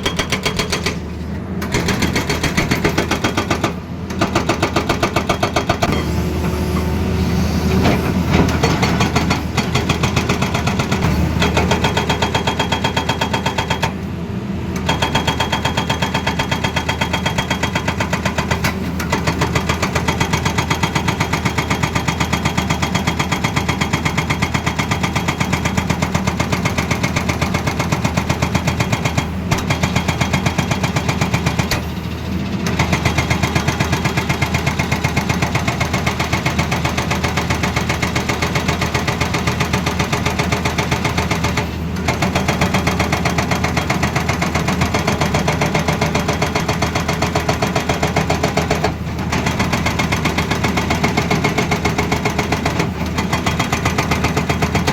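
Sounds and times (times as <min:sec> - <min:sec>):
excavator hammering: 0:00.0 - 0:06.8, 0:07.7 - 0:14.0, 0:14.8 - 0:54.9
diesel engine humming: 0:05.9 - 0:12.6.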